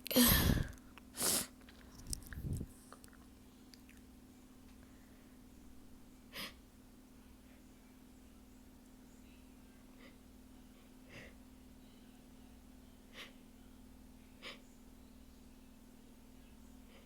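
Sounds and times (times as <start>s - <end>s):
low steady hum: 0.0s - 17.0s
person sniffing through nose: 0.2s - 1.6s.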